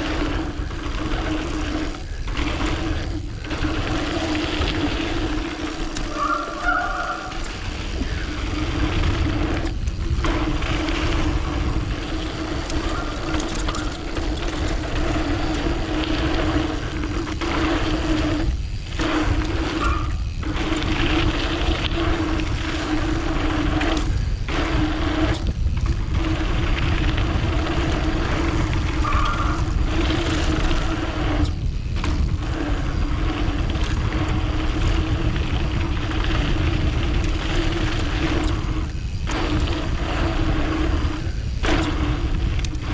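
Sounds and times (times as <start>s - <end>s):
bike freehub buzzing: 0.0s - 42.9s
tyre rumble: 0.0s - 42.9s
wind on camera: 0.0s - 42.9s.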